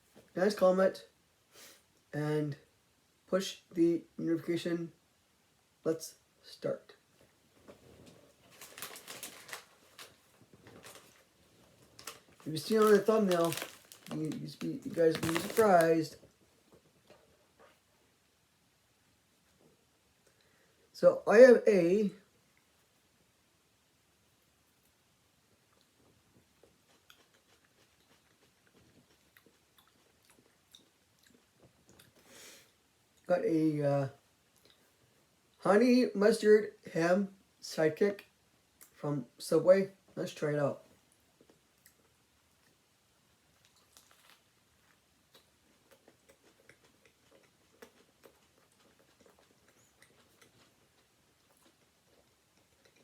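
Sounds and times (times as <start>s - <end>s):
person chewing sandwich: 7.7s - 17.9s, 25.6s - 32.6s, 43.5s - 53.0s.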